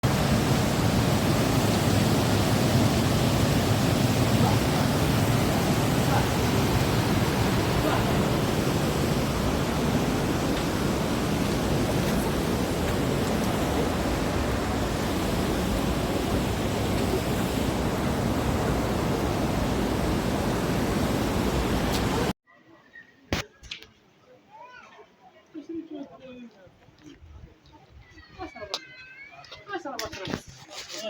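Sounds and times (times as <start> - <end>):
waterfall rushing: 0.0 - 22.3.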